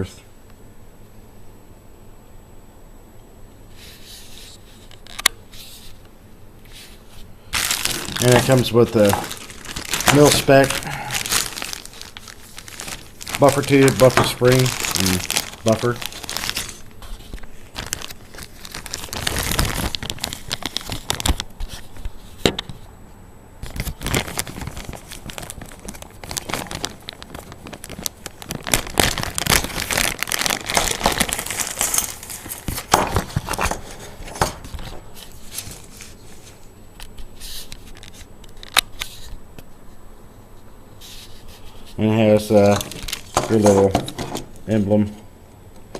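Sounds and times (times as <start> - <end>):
plastic packaging crinkling and tearing: 6.8 - 22.7, 23.6 - 39.4, 41.2 - 44.8.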